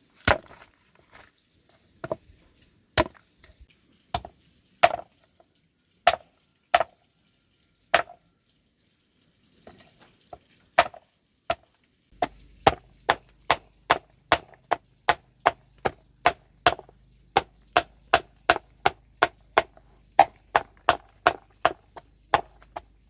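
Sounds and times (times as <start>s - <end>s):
hand tool striking: 12.2s - 23.0s.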